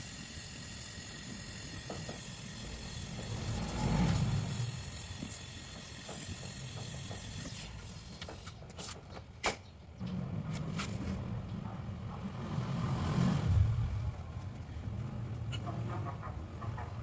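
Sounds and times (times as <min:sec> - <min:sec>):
gas hissing: 0:00.0 - 0:08.6.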